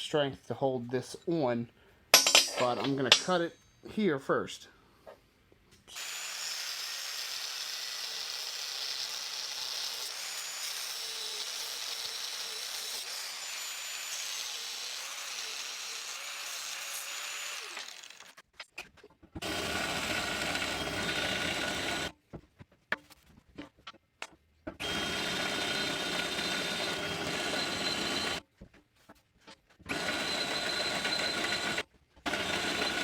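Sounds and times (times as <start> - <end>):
power tool cutting steel: 5.9 - 18.4, 19.4 - 22.1, 24.8 - 28.4, 29.9 - 33.0.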